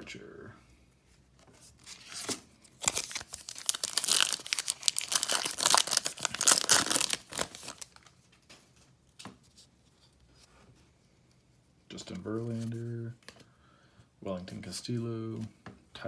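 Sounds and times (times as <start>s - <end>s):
wrapper tearing and crinkling: 1.8s - 8.2s.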